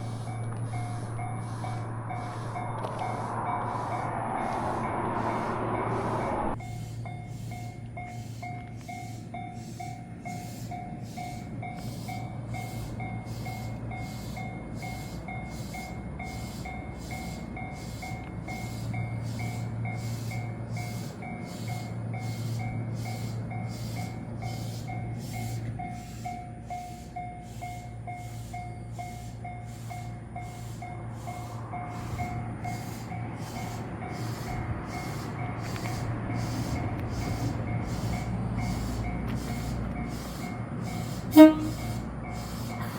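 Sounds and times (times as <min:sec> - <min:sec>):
level crossing warning bell: 0:00.0 - 0:42.9.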